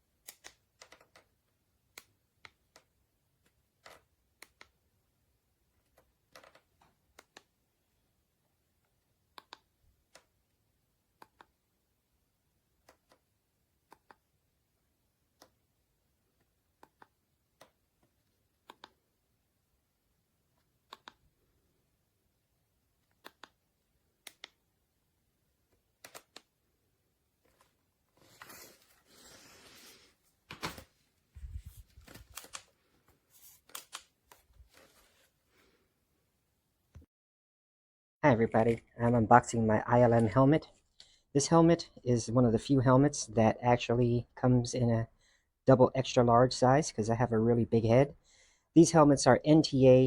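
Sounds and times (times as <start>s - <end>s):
objects rustling: 27.5s - 33.7s.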